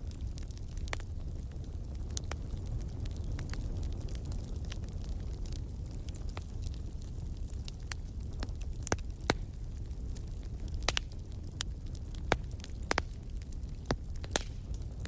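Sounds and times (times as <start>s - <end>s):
low rumble of flame: 0.0s - 15.0s
wood fire crackling: 0.0s - 15.0s
sharp pops and snaps: 10.8s - 11.2s, 12.2s - 14.8s.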